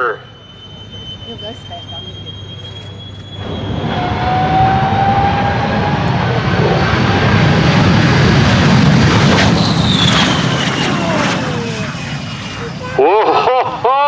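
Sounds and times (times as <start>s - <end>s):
jet engine high whine: 0.0s - 14.0s
jet engine roar: 0.0s - 14.0s.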